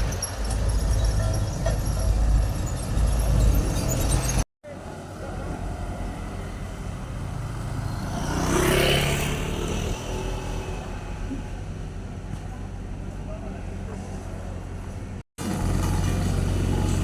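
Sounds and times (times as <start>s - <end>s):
loud low engine rumble: 0.0s - 17.0s
engine revving up: 5.8s - 11.6s.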